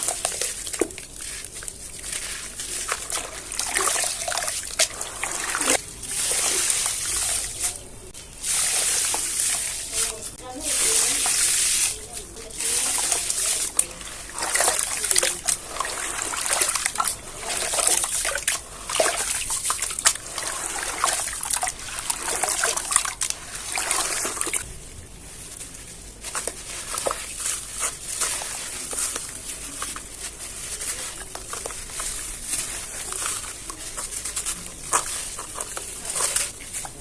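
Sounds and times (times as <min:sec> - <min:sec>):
water trickling and splashing: 0:00.0 - 0:25.0
wet cement crackling and crumbling: 0:00.0 - 0:37.0.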